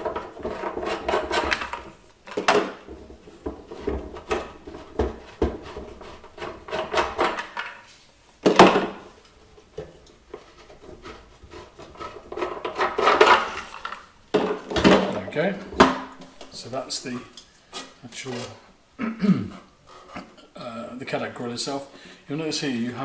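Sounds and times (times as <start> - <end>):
knocks clunks and rubbing: 0.0 - 7.8.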